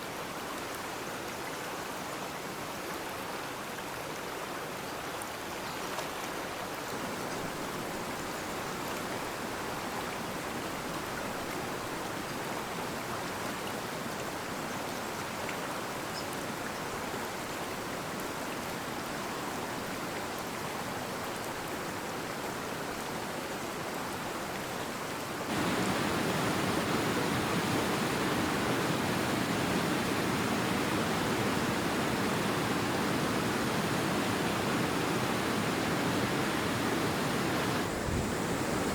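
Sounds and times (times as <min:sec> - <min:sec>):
stream water rushing: 0:03.9 - 0:38.9.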